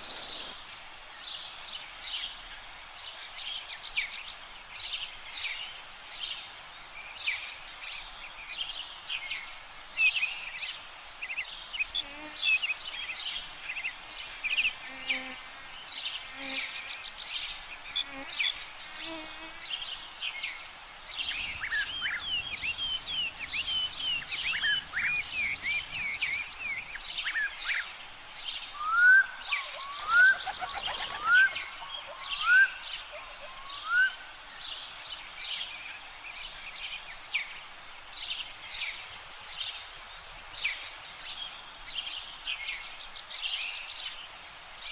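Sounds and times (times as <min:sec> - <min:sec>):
rapid high bird trill: 0:00.0 - 0:00.6, 0:24.3 - 0:26.8
rising bird whistles: 0:00.0 - 0:00.6
small birds chirping: 0:00.0 - 0:00.6, 0:15.9 - 0:28.8, 0:29.4 - 0:33.9, 0:38.2 - 0:44.9.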